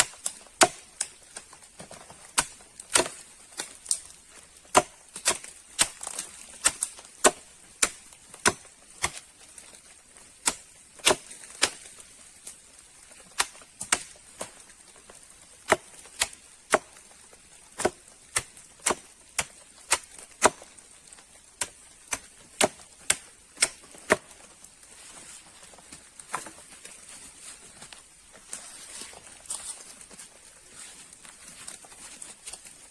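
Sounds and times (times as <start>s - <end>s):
axe chopping wood: 0.0s - 9.3s, 10.4s - 12.0s, 13.3s - 14.7s, 15.6s - 17.0s, 17.7s - 20.7s, 21.6s - 24.4s.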